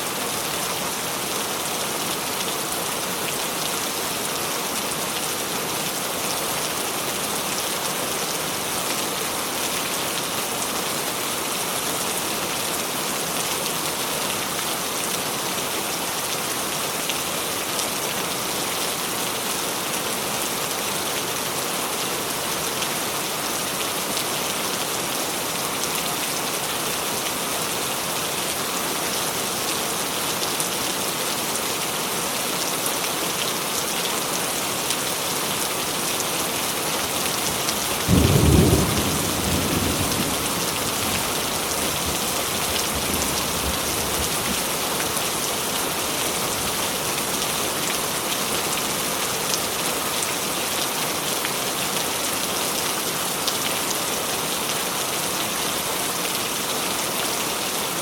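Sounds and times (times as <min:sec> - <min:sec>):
steady rain falling: 0:00.0 - 0:58.0
thunder clap rumbling: 0:38.1 - 0:42.2.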